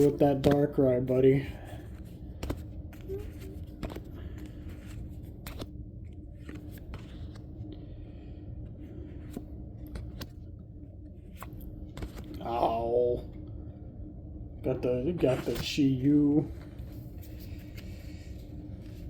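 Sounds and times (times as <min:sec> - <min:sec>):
low room hum: 0:00.0 - 0:19.0
cards clicking and snapping: 0:02.3 - 0:05.7.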